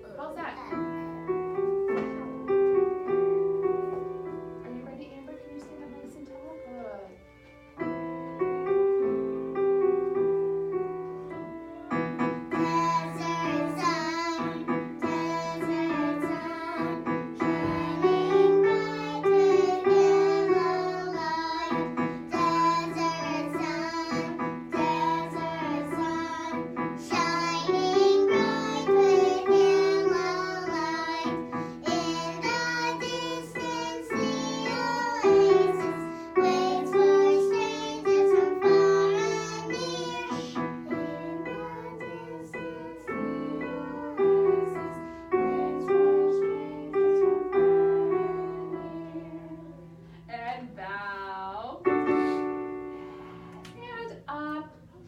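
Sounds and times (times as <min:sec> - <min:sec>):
piano accompaniment: 0:00.0 - 0:55.0
child singing: 0:12.5 - 0:49.8.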